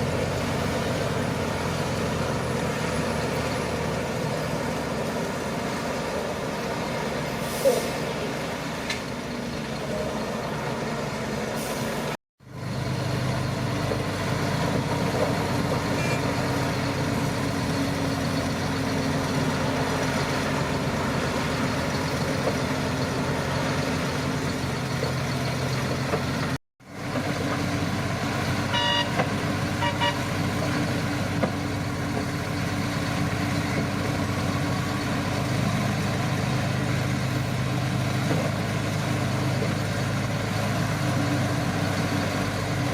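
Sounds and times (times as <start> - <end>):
bulldozer diesel engine running: 0.0 - 42.9.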